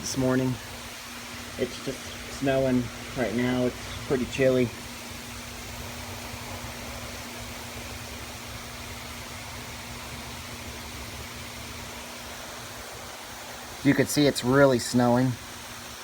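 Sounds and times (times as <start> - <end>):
steady background hiss: 0.0 - 16.0.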